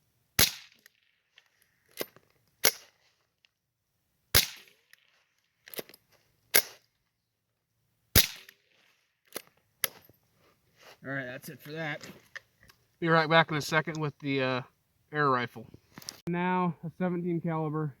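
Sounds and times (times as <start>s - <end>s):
rifle shots: 0.4s - 0.8s, 4.3s - 4.8s, 8.1s - 8.6s.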